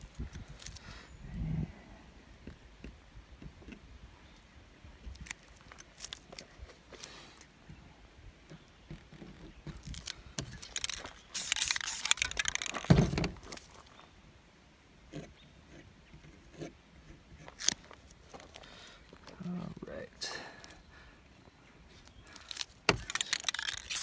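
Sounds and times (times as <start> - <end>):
rough hissing scrape: 10.5 - 12.7, 22.4 - 24.0.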